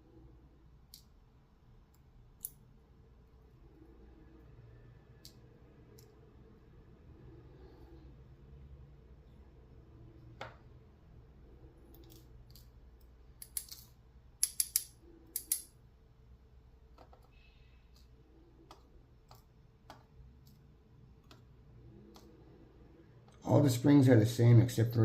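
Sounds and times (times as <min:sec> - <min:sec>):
padlock parts clicking and clinking: 0:11.9 - 0:15.8.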